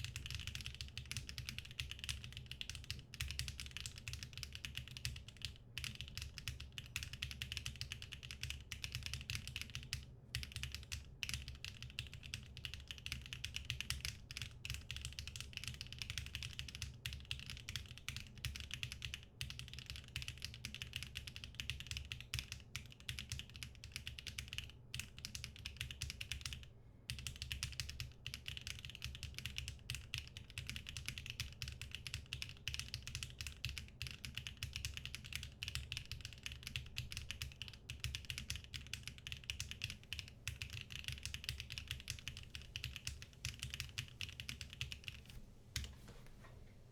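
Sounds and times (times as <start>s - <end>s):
fast mechanical keyboard typing: 0.0s - 45.2s.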